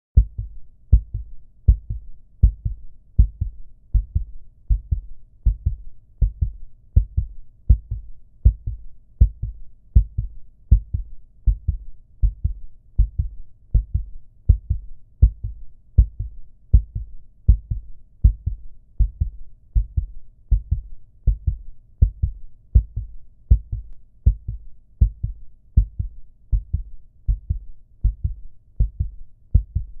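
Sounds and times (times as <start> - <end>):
heartbeat thuds: 0.2 - 30.0.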